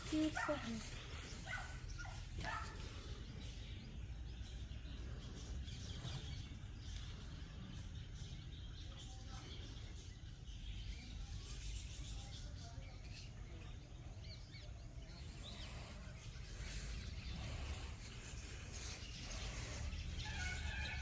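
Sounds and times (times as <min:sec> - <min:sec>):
faint bird chirps: 0:00.0 - 0:21.0
steady low rumble: 0:15.2 - 0:21.0.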